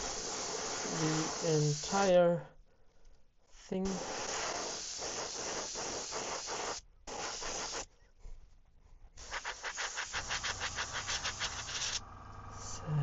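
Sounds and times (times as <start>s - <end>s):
airbrush spraying hiss: 0.0s - 2.2s, 3.8s - 7.9s, 9.2s - 12.9s
low hum: 10.6s - 13.0s.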